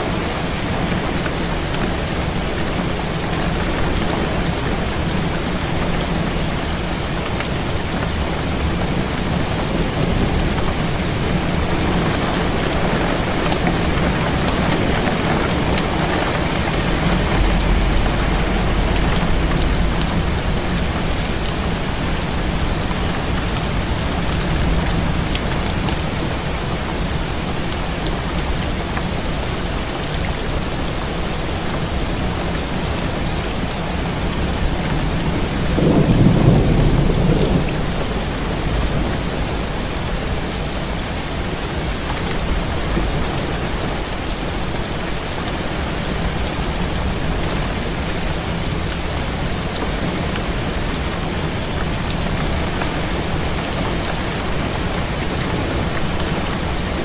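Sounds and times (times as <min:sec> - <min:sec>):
heavy rain on window: 0:00.0 - 0:57.0
thunder rumble: 0:08.1 - 0:26.8, 0:34.2 - 0:41.0.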